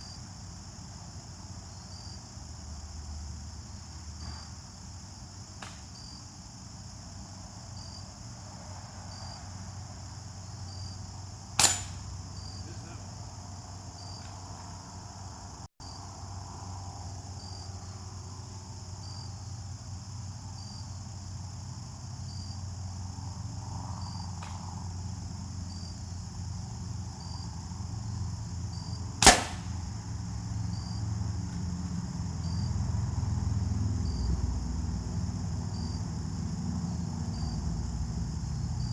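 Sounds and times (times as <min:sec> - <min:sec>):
crickets chirping: 0:00.0 - 0:38.9
gunshots: 0:11.6 - 0:12.0, 0:29.2 - 0:29.8.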